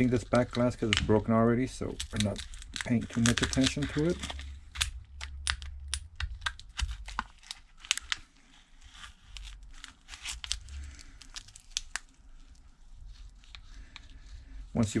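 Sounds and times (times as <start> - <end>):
cracked glass crackling and snapping: 1.9 - 8.2, 9.4 - 12.2.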